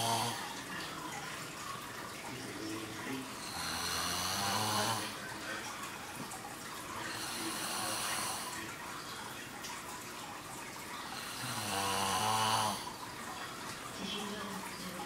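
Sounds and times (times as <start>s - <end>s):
person snoring: 0.0s - 0.4s, 3.3s - 5.2s, 7.0s - 8.6s, 11.1s - 12.9s
soft airy breath: 7.0s - 8.7s.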